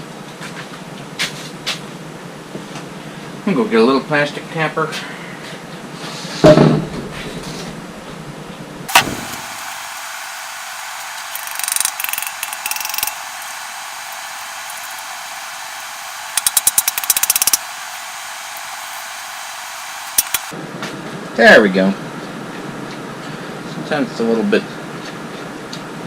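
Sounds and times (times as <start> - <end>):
tools rattling: 11.2 - 17.6
sharp click: 20.0 - 20.5.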